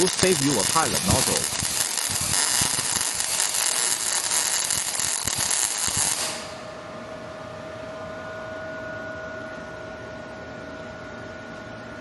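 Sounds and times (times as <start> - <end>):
welding arc crackling: 0.0 - 6.6
steady hum: 0.0 - 12.0.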